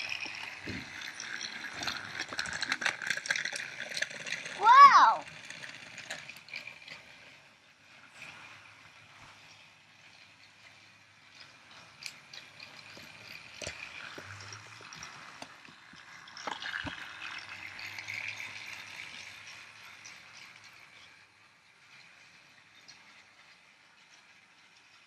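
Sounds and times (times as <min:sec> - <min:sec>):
rattling clicks over track joints: 0:00.0 - 0:04.6
toy train motor whirring: 0:00.0 - 0:25.0.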